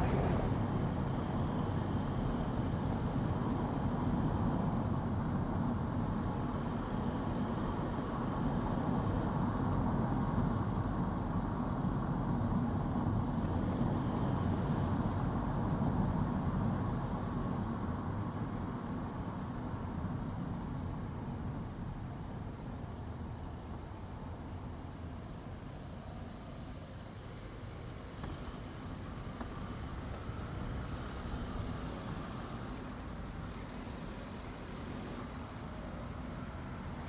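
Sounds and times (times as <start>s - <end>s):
tyre and road noise: 0.0s - 2.1s.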